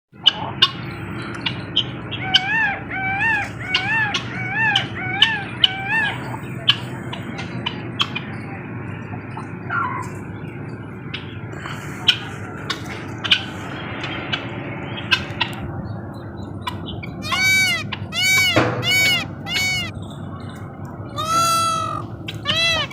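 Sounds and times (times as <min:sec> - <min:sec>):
bird arching calls: 0:01.4 - 0:06.9, 0:16.6 - 0:20.0, 0:21.1 - 0:22.9.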